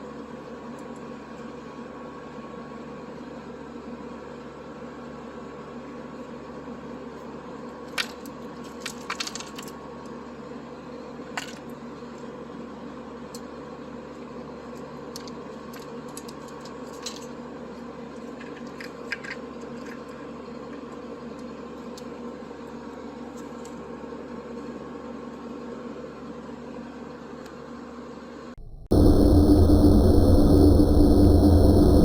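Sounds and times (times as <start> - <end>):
gear rig mechanical hum: 28.6 - 32.0.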